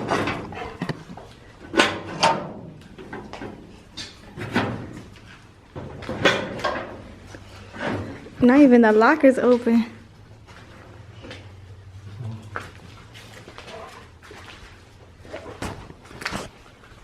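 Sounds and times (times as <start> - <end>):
metal locker doors clanking: 1.7 - 4.9, 5.8 - 7.2.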